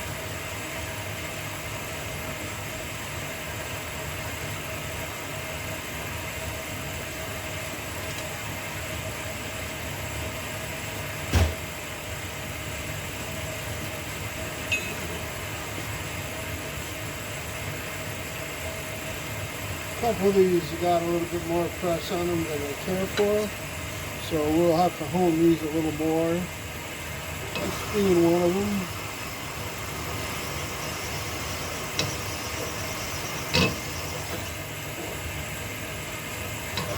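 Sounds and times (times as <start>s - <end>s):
machine motor humming: 20.0s - 36.9s.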